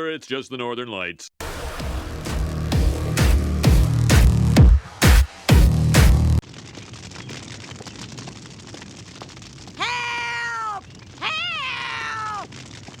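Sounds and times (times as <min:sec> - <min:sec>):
cat meowing: 0:09.8 - 0:12.5.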